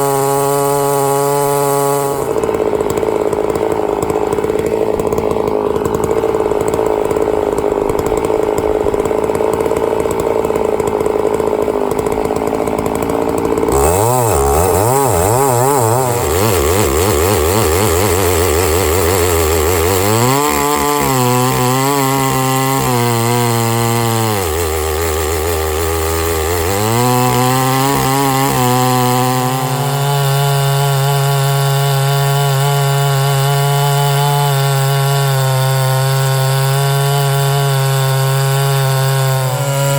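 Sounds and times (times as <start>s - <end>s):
chainsaw milling a log: 0.0s - 39.9s.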